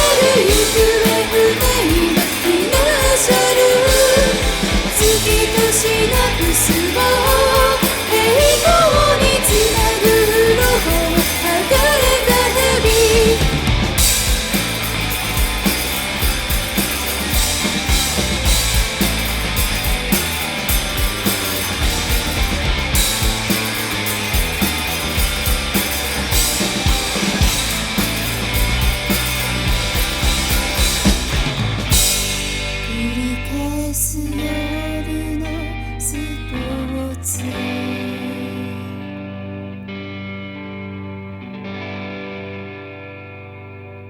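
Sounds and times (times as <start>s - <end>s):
person singing: 0.0s - 13.7s, 32.9s - 39.7s
drum kit beat: 0.0s - 33.2s
rock band playing: 0.0s - 33.6s.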